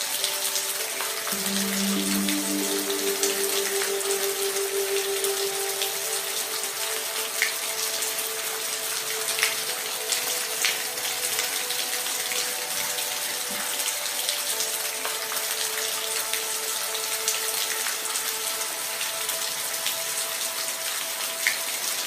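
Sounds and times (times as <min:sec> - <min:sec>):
soft sustained tone: 0:00.0 - 0:21.0
steady rain falling: 0:00.0 - 0:22.0.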